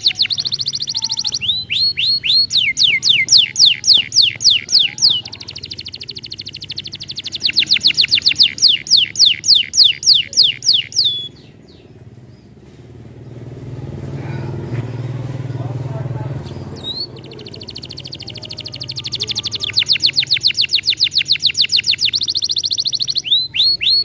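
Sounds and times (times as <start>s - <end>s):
fast buzzing trill: 0.0s - 11.3s, 16.8s - 24.0s
canary singing: 0.0s - 24.0s.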